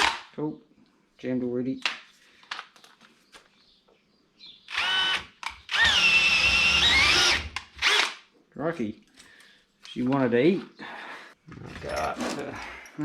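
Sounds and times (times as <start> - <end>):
power drill boring: 4.7 - 8.2.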